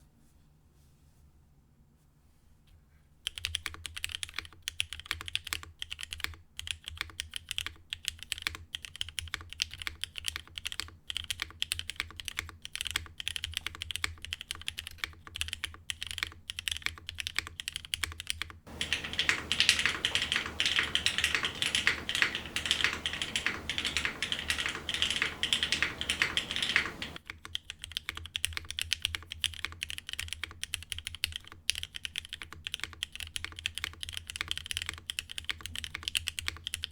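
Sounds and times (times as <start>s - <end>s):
mechanical keyboard typing: 18.7s - 27.2s
microphone hiss: 18.7s - 27.2s.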